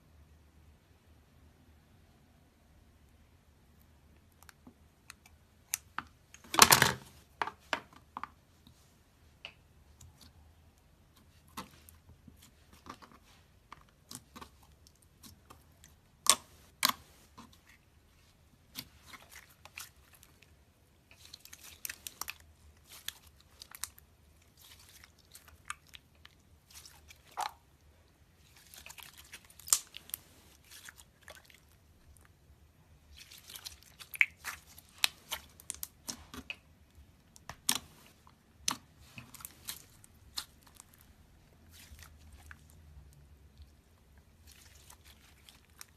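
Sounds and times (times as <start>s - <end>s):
slime squishing and popping: 28.6s - 32.2s, 33.1s - 36.7s.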